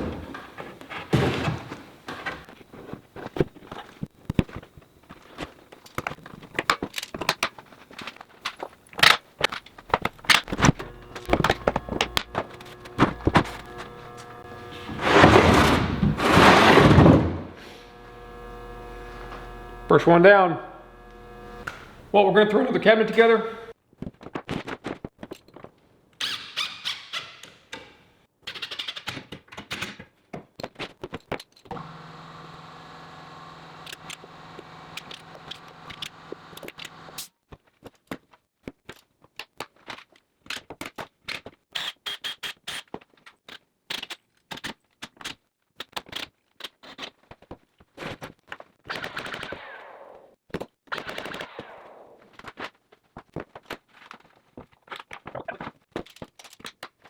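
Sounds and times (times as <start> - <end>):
sharp clicks and knocks: 5.8 - 14.6
drill running: 9.8 - 22.8, 31.7 - 37.2.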